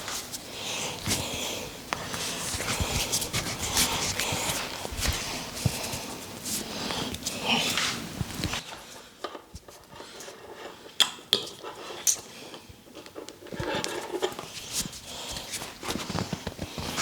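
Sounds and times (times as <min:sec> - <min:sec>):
hands rubbing skin: 0:00.0 - 0:08.6, 0:14.4 - 0:17.0.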